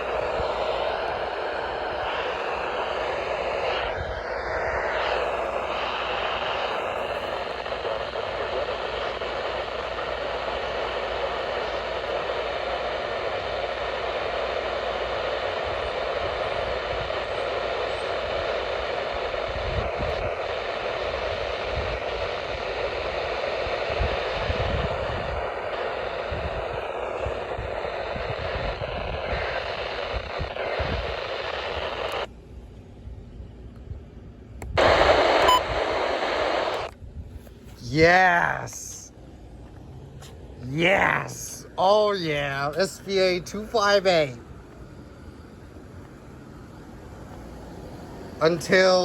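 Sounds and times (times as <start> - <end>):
radio static hiss: 0.0 - 32.3, 34.7 - 49.0.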